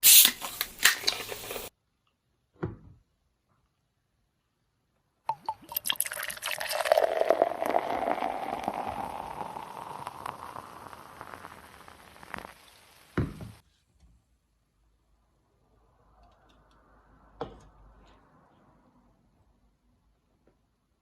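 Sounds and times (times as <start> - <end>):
liquid pouring into container: 5.3 - 13.4.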